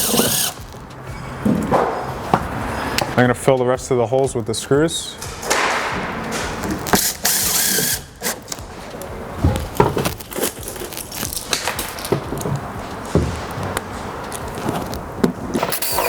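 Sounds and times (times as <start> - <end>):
screws and panel clicking: 0.0 - 0.6
power screwdriver whirring: 0.0 - 0.7, 6.9 - 8.6.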